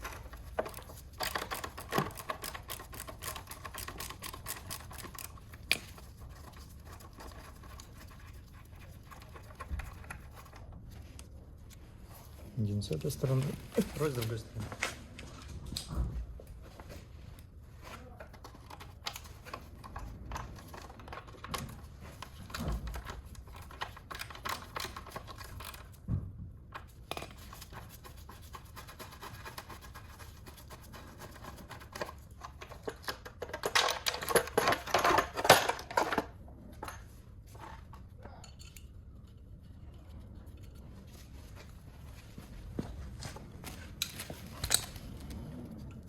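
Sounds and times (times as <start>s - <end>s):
hand tools clicking on metal: 0.0s - 7.1s.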